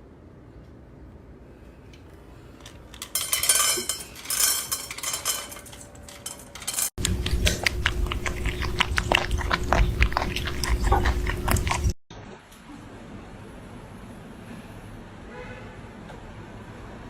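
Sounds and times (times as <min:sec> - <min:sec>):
hard objects clattering: 0:02.6 - 0:12.0.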